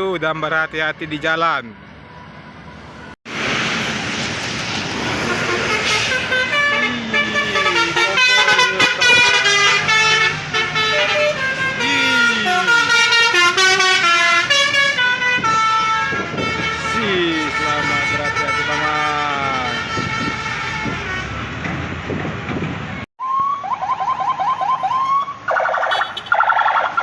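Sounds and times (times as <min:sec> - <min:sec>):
rush of bus passing: 0:01.8 - 0:27.0
bus musical horn playing a tune: 0:05.2 - 0:21.4.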